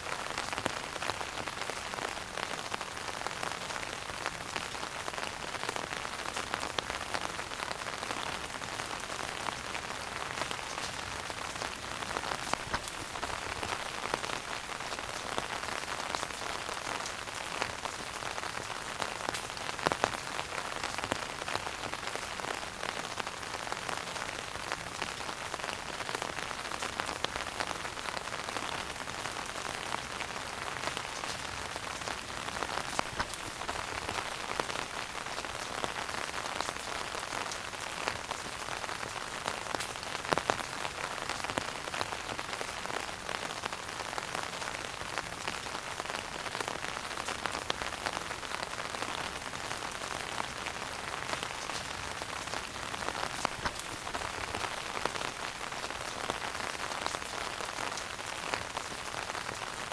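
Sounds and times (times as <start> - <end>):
wood fire crackling: 8.9 - 22.2, 30.0 - 37.8, 51.3 - 56.4
loud pops from fire: 32.8 - 34.3.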